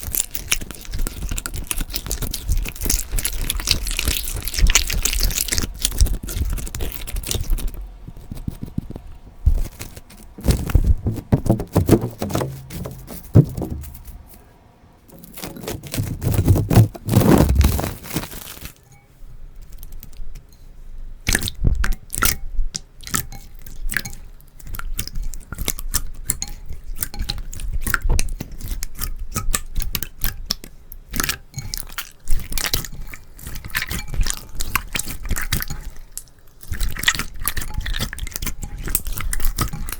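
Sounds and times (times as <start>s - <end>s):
wet sticky slime squelching: 0.0s - 8.9s, 23.0s - 39.9s.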